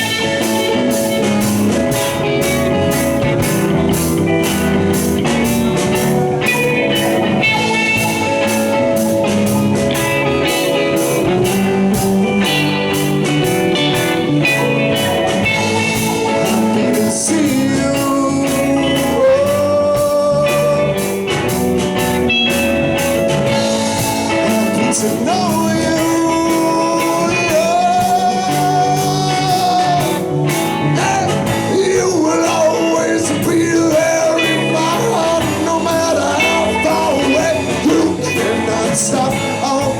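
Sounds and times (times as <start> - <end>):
drums: 0.0 - 39.9
guitar bending long notes: 0.0 - 39.9.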